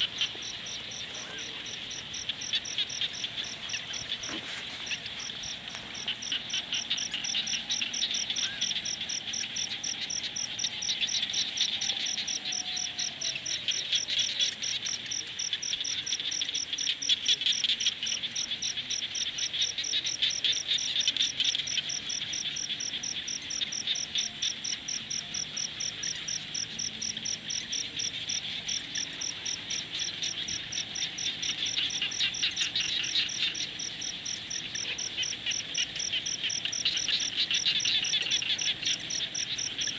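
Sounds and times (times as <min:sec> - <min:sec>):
cricket chirping: 0:00.0 - 0:39.9
insects trilling: 0:00.0 - 0:39.9.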